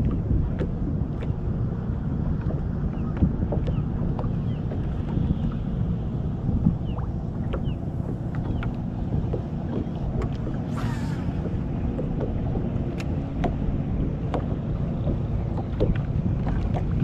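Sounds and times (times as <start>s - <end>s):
boat engine low rumble: 0.0s - 17.0s
wind noise on microphone: 0.0s - 17.0s
brief hiss: 10.7s - 11.4s
light ticks: 12.9s - 13.6s.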